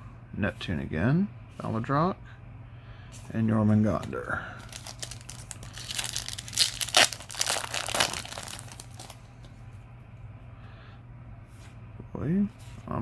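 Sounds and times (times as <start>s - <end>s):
foil wrapper tearing and crinkling: 4.7s - 9.2s.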